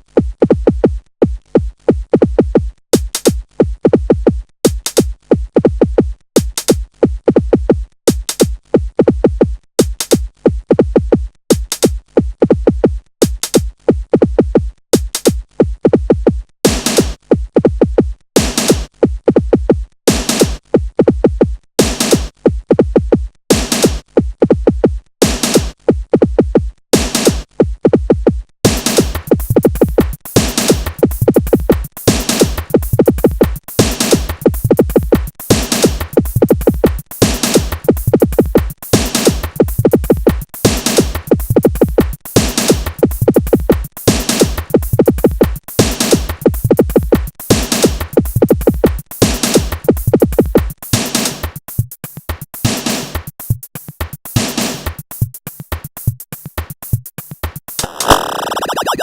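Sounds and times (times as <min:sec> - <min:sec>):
electronic dance music: 0:28.7 - 0:50.8, 0:51.4 - 0:51.6, 0:57.4 - 0:59.0.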